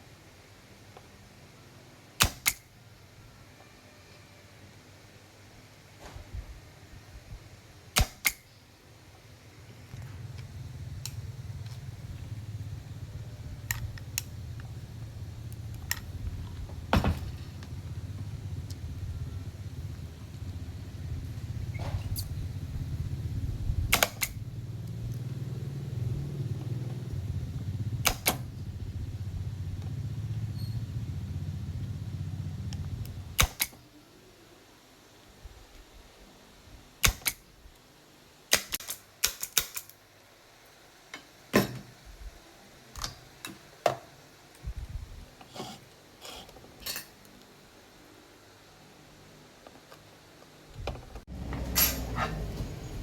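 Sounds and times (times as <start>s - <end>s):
sharp clicks: 2.2s - 2.6s, 23.9s - 25.2s, 28.0s - 28.4s, 32.7s - 33.8s, 37.0s - 37.4s, 38.5s - 40.0s.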